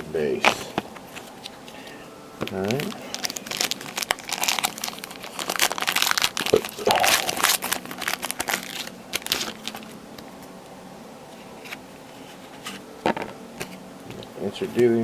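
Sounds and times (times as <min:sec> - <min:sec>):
card pack wrapper crinkling and tearing: 0:02.4 - 0:10.0.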